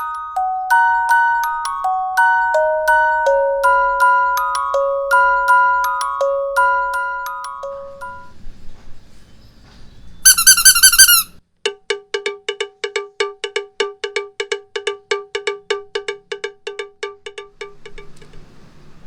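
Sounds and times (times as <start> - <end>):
ringing percussive strikes: 0.0 - 8.4
wavering squeaky tone: 0.0 - 8.4, 10.2 - 11.4.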